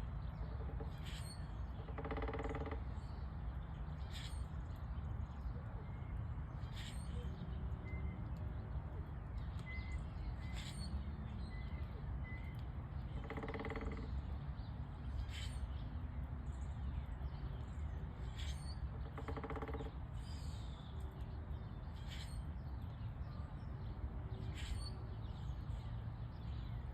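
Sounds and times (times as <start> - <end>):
woodpecker drumming on wood: 0.4 - 3.1, 13.0 - 14.4, 18.7 - 20.1
faint bird chirps: 5.8 - 8.2.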